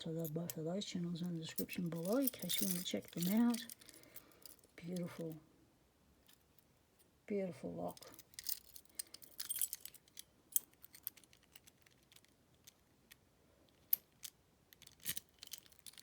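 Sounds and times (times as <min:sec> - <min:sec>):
padlock metallic clicks and rattling: 0:01.3 - 0:05.3, 0:07.9 - 0:16.0.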